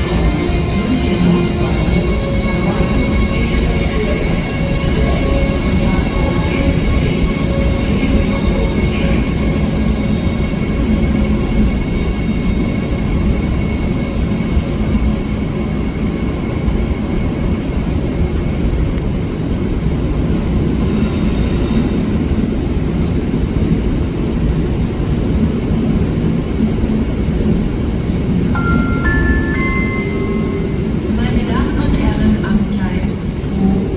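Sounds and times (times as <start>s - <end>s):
train rumbling: 0.0s - 33.9s
rising three-note announcement chime: 28.6s - 30.8s.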